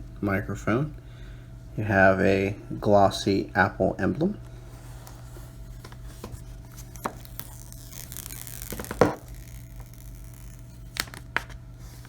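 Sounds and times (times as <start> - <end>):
packaging rustling: 4.8 - 12.0.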